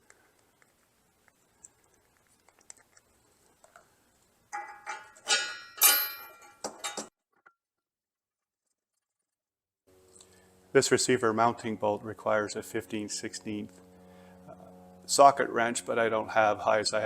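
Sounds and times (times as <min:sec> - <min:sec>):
metal hardware clinking: 0:04.5 - 0:07.1
sharp metallic knocks: 0:04.5 - 0:07.1.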